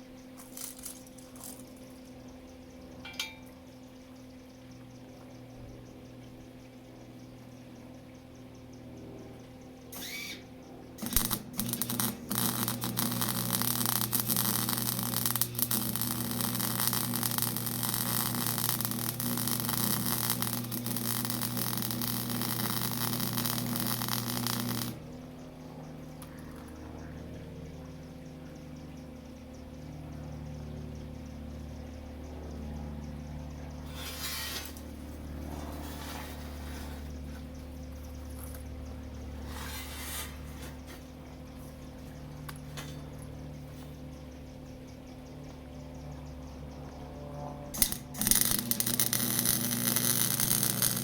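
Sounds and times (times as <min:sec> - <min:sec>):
electrical hum: 0:00.0 - 0:51.0
welding arc crackling and hissing: 0:00.4 - 0:01.6, 0:10.0 - 0:10.4, 0:11.0 - 0:25.0, 0:47.8 - 0:51.0.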